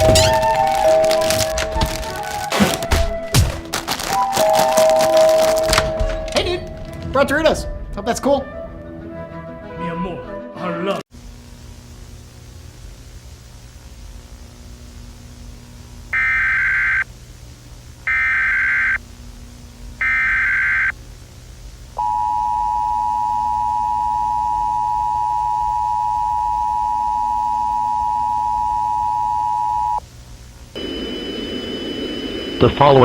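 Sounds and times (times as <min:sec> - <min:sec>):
digital data bursts: 0:00.0 - 0:01.5, 0:16.1 - 0:17.0, 0:18.1 - 0:19.0, 0:20.0 - 0:21.0, 0:30.8 - 0:33.0
two-tone attention signal: 0:22.0 - 0:30.0.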